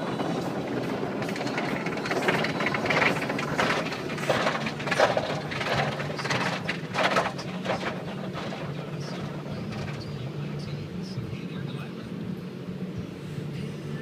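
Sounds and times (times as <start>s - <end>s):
car wash rushing and crackling: 0.0s - 14.0s
low machinery hum: 0.0s - 14.0s.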